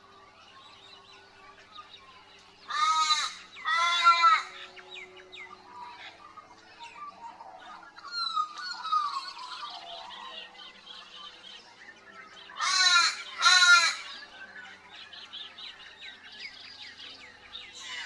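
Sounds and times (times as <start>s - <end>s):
birds chirping and whistling: 0.0s - 18.0s
loud drawn-out bird calls: 2.6s - 11.3s, 12.3s - 14.4s.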